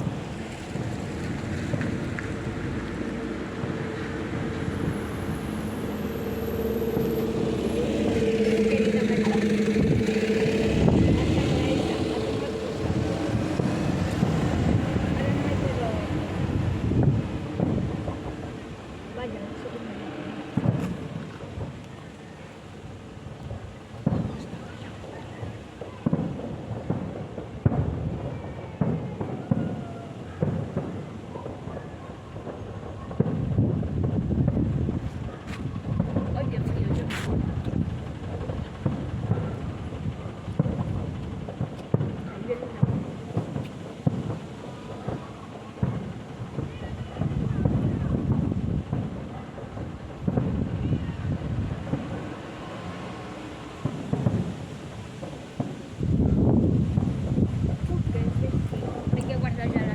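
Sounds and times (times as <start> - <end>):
crackling fireworks barrage: 0.0 - 59.9
fireworks bursts rumbling: 0.0 - 59.9.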